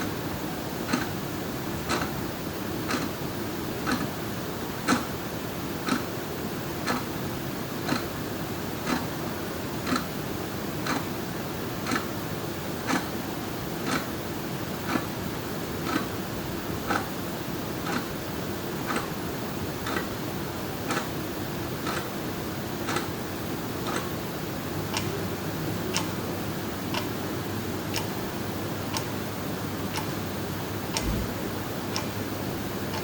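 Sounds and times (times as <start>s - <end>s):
clock ticking: 1.9s - 2.1s, 2.9s - 3.1s, 19.8s - 20.1s, 21.8s - 22.1s, 22.9s - 23.1s, 23.8s - 24.1s, 24.9s - 25.2s, 25.9s - 26.2s, 26.9s - 27.2s, 27.9s - 28.2s, 29.9s - 30.3s, 30.9s - 32.2s
room noise: 29.8s - 33.0s
low bump: 31.0s - 31.6s.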